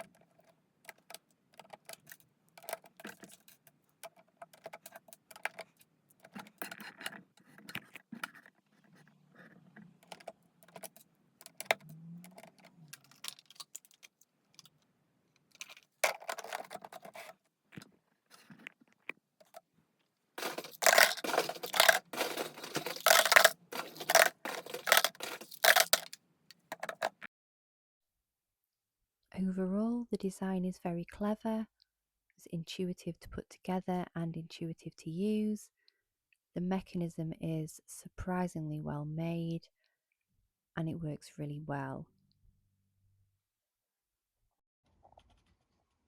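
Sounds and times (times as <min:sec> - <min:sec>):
plastic bricks clicking and rattling: 0:00.0 - 0:08.5, 0:10.0 - 0:14.7, 0:15.5 - 0:17.3, 0:20.4 - 0:27.2.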